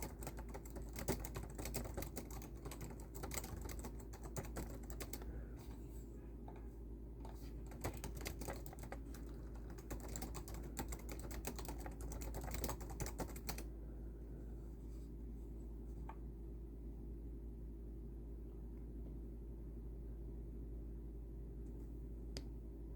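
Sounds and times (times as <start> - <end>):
typing on computer keyboard: 0.0 - 5.3, 7.2 - 13.7
steady low hum: 0.0 - 22.9.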